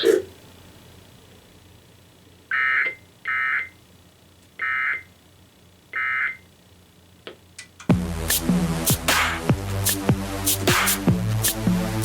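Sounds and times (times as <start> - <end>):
digital warbling tone bursts: 2.5 - 3.8, 4.6 - 5.1, 6.0 - 6.4.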